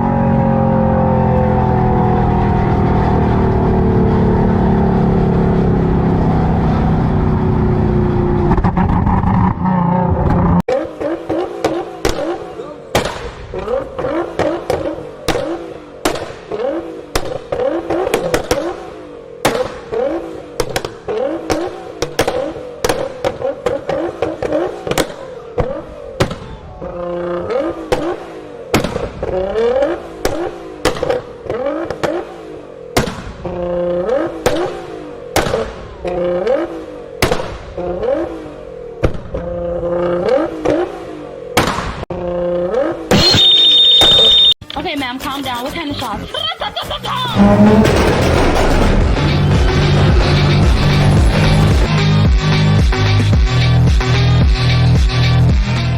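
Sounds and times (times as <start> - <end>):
car engine revving: 0.0 - 43.1, 47.3 - 55.9
exhaust popping and banging: 47.3 - 52.0.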